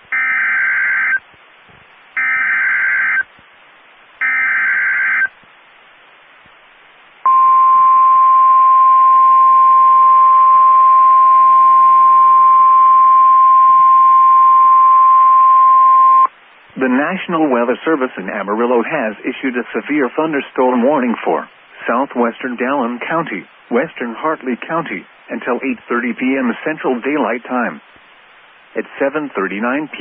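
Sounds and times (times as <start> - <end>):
steady single-pitch alarm tone: 0.1 - 1.2, 2.2 - 3.2, 4.2 - 5.3, 7.3 - 16.3
radio hiss: 16.2 - 30.0.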